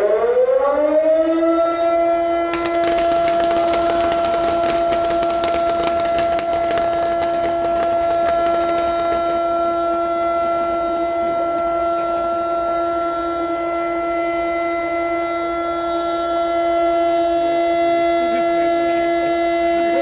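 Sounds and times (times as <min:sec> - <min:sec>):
siren steady pitch: 0:00.0 - 0:20.0
dense crackling: 0:02.5 - 0:10.4.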